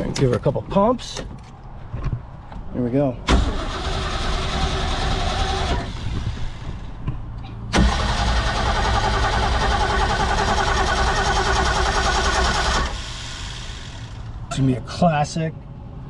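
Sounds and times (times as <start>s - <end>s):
boat engine cranking: 7.8s - 13.4s.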